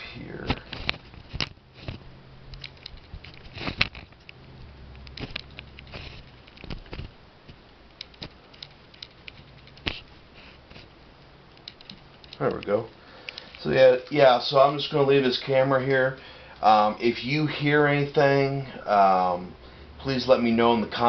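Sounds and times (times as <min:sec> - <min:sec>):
camera handling clicks and rustles: 0:00.5 - 0:02.0, 0:02.6 - 0:04.4, 0:05.0 - 0:07.2, 0:08.0 - 0:10.1, 0:11.6 - 0:12.7.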